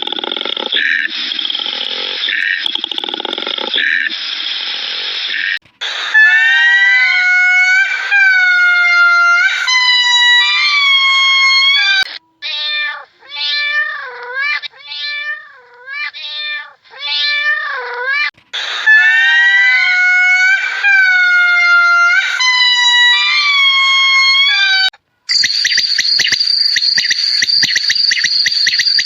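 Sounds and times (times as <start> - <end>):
animal calling: 0.0 - 4.4.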